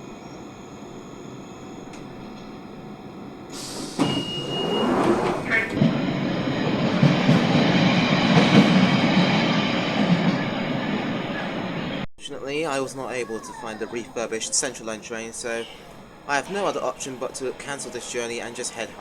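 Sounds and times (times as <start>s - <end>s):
train wheels squealing: 0.0s - 12.0s
train wheels rumbling on rails: 0.0s - 19.0s.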